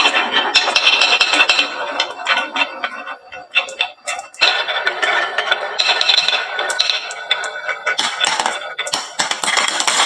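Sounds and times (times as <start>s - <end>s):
marbles clattering on wooden run: 5.8s - 10.0s.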